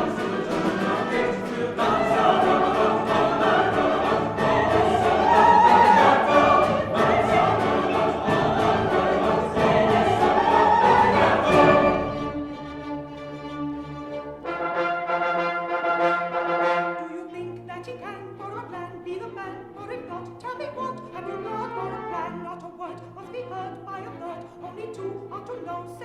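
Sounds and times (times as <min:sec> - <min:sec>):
orchestral music with brass: 0:00.0 - 0:17.6, 0:20.8 - 0:23.3.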